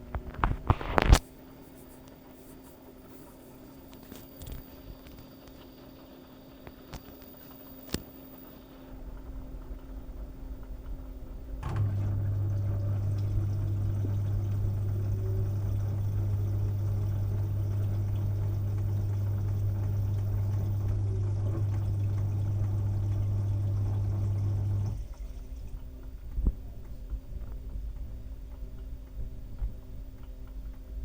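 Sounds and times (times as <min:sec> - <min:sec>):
drain pump humming: 0:00.0 - 0:31.0
water rushing through pump: 0:08.9 - 0:31.0
drain pump click: 0:10.6 - 0:27.2.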